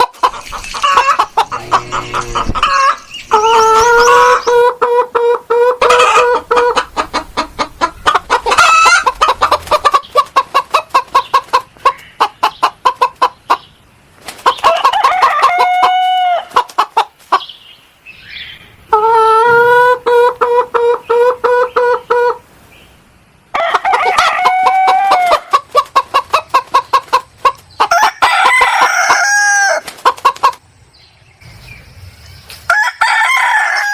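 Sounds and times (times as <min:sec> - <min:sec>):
chickens clucking: 0:00.0 - 0:22.8, 0:23.5 - 0:33.9
rooster crowing: 0:00.8 - 0:04.6, 0:14.7 - 0:16.5, 0:23.6 - 0:25.5, 0:27.9 - 0:29.8, 0:32.7 - 0:33.9.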